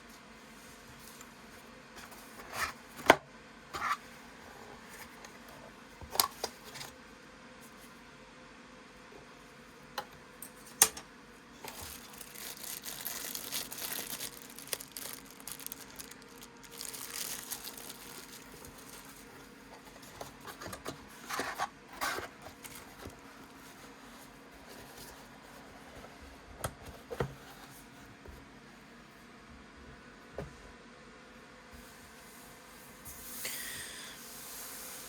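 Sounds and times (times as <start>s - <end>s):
packaging crinkling and rustling: 11.6s - 26.1s.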